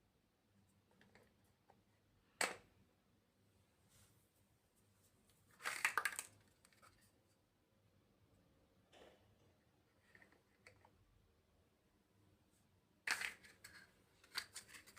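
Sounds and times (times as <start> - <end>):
plastic building blocks clicking: 5.6 - 7.0, 13.1 - 14.9.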